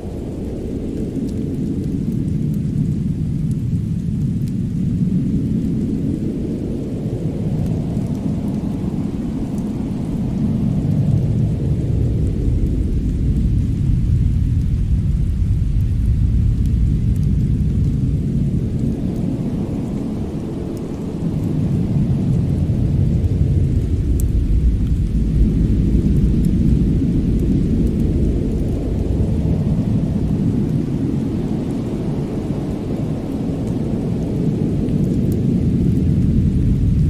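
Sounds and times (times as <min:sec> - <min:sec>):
burning wood crackles: 0:00.0 - 0:37.0
fireplace deep rumble: 0:07.1 - 0:20.0, 0:21.2 - 0:33.8, 0:34.4 - 0:37.0.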